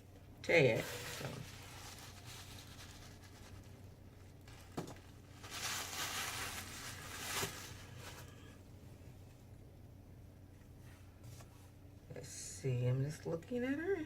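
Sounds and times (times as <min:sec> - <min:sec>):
wig rustling: 0:00.8 - 0:08.4.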